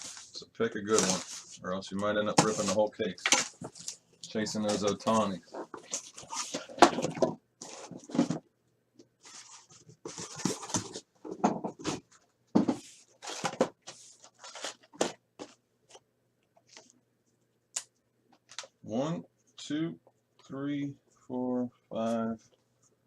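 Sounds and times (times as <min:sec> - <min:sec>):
cardboard scraping and rustling: 0:02.4 - 0:02.9, 0:09.2 - 0:15.6.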